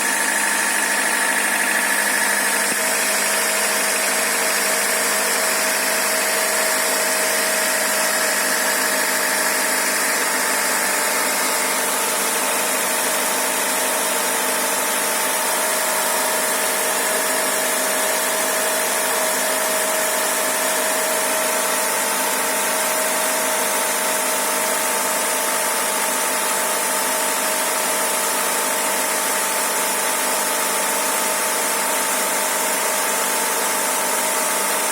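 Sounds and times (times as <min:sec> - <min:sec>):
car engine idling: 0:00.0 - 0:12.9
rhythmic engine knock: 0:00.0 - 0:34.9.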